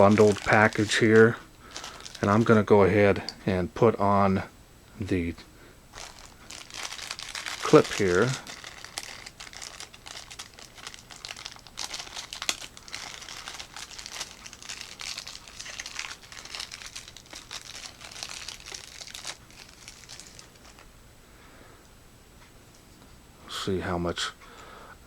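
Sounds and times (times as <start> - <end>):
plastic packaging crinkling: 0.0 - 3.2, 5.9 - 20.9.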